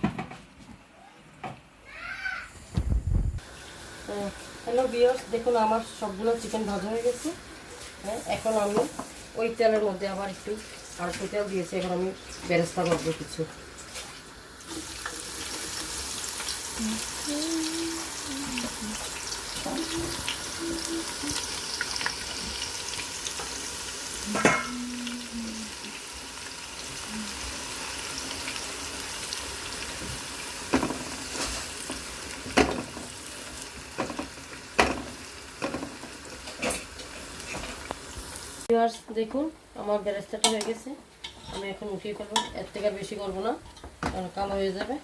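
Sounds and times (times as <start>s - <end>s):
onions sizzling in hot oil: 3.4s - 39.2s.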